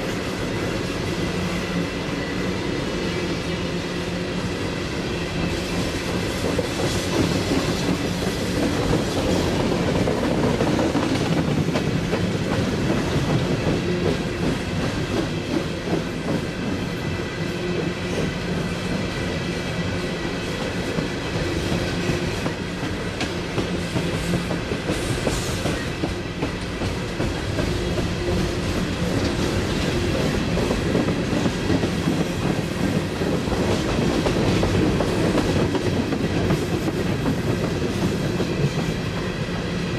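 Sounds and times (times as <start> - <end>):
freight train rolling past: 0.0 - 39.9.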